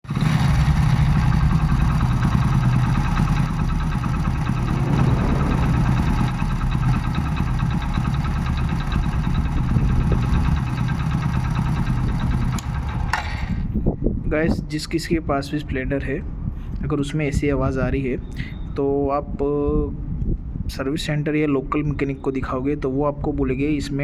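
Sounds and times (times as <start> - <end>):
motorcycle engine running: 0.0 - 13.2
engine rattling: 0.0 - 13.8.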